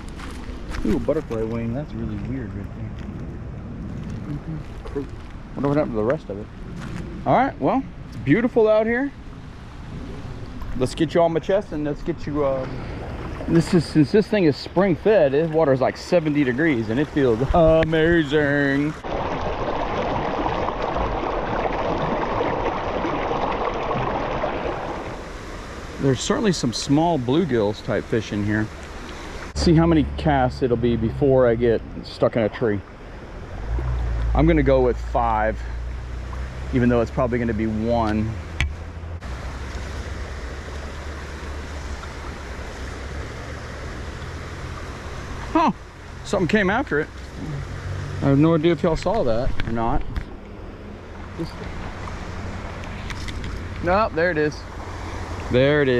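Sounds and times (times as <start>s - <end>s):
low rumble: 0.0s - 8.4s
river water rushing: 12.3s - 14.6s, 15.4s - 30.2s, 35.7s - 48.7s, 50.9s - 55.9s.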